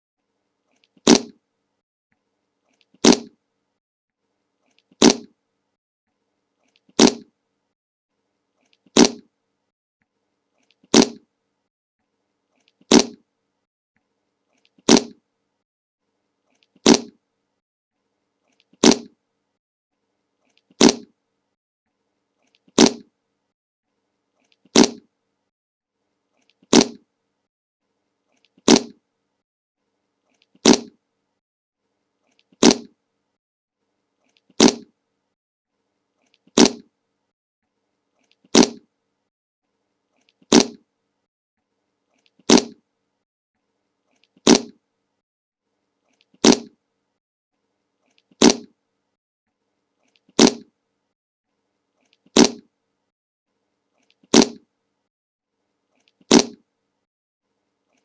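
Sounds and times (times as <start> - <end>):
short fart sound effect: 1.0 - 1.4, 3.0 - 3.4, 5.0 - 5.3, 7.0 - 7.3, 8.9 - 9.3, 10.9 - 11.2, 12.9 - 13.2, 14.9 - 15.2, 16.8 - 17.2, 18.8 - 19.1, 20.8 - 21.1, 22.8 - 23.1, 24.7 - 25.1, 26.7 - 27.0, 28.7 - 29.0, 30.6 - 31.0, 32.6 - 32.9, 34.6 - 34.9, 36.6 - 36.9, 38.5 - 38.8, 40.5 - 40.8, 42.5 - 42.8, 44.4 - 44.8, 46.4 - 46.7, 48.4 - 48.7, 50.4 - 50.6, 52.4 - 52.7, 54.3 - 54.6, 56.3 - 56.6.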